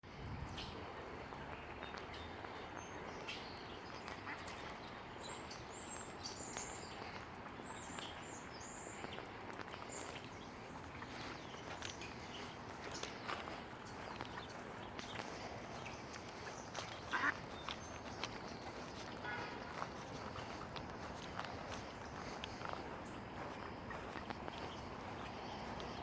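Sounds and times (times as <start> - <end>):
outdoor background noise: 0.0 - 26.0
high bird chirps: 15.8 - 19.8.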